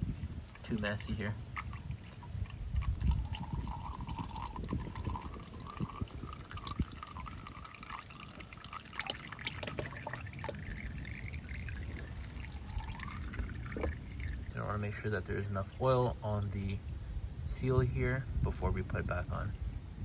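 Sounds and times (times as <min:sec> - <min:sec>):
oil dripping into a pan: 0:00.4 - 0:14.6.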